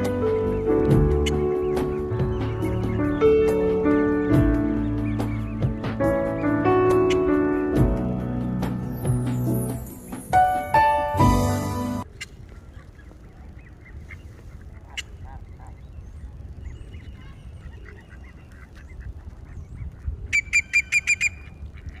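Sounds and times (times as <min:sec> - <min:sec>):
bird calling rapidly: 0:00.0 - 0:07.7, 0:12.2 - 0:22.0
bird chirps: 0:00.0 - 0:07.7
music: 0:00.0 - 0:12.0
low outdoor rumble: 0:00.0 - 0:22.0.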